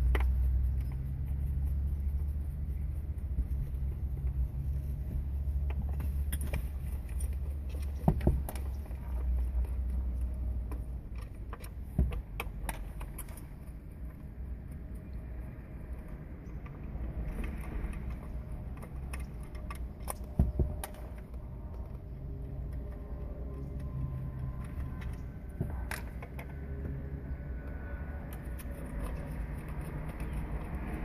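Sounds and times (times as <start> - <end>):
low hum: 0.0 - 31.0
plastic and metal parts clicking: 16.6 - 27.0.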